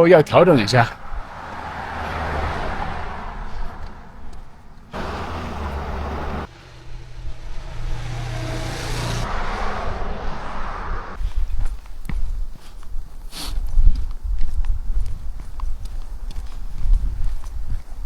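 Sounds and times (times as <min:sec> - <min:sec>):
highway traffic rushing past: 0:00.0 - 0:11.5.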